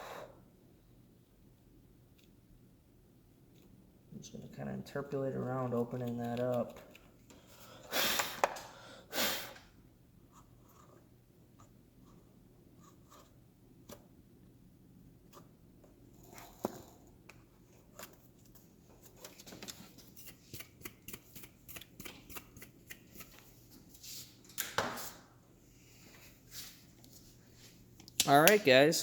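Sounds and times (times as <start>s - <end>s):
scrape: 24.0s - 24.4s, 25.0s - 27.8s.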